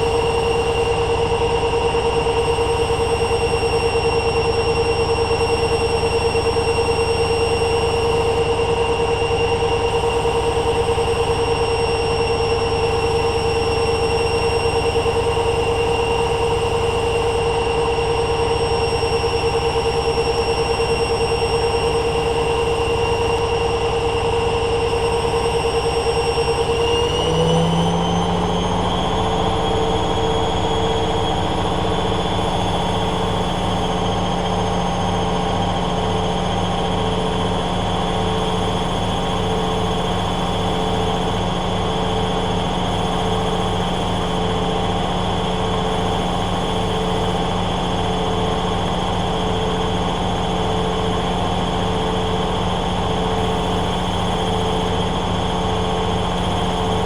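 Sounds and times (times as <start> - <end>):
washing machine motor whine: 0.0 - 57.0.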